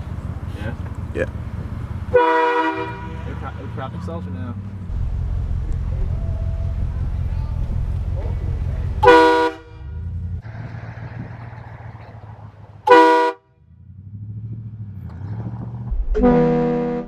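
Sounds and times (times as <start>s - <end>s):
truck engine rumbling: 0.0s - 17.0s
train horn blasts: 1.7s - 4.3s, 9.0s - 10.1s, 12.9s - 13.4s, 16.2s - 17.0s.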